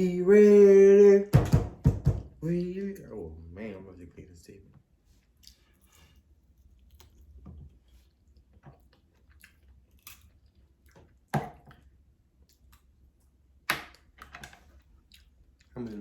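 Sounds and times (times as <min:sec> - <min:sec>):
sharp knocks: 0:01.3 - 0:02.3
chewing seafood: 0:05.1 - 0:16.0.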